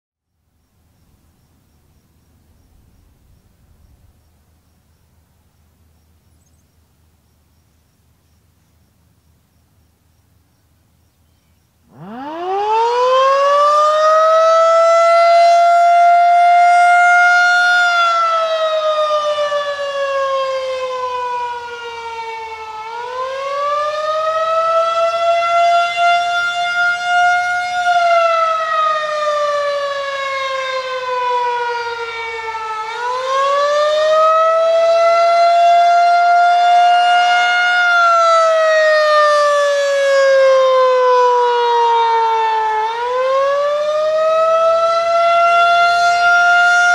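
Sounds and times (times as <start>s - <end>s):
outdoor warning siren rising and falling: 11.9s - 46.9s.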